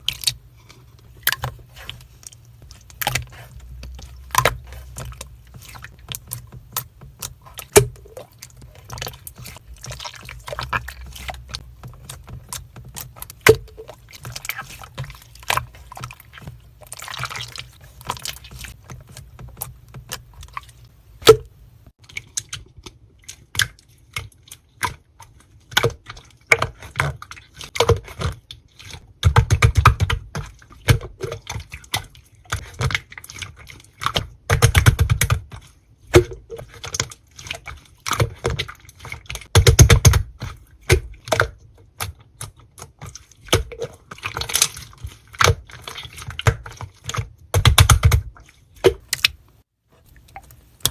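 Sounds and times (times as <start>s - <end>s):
slime crackling: 0.0s - 21.0s
slime squishing with sticky clicks: 0.0s - 50.9s.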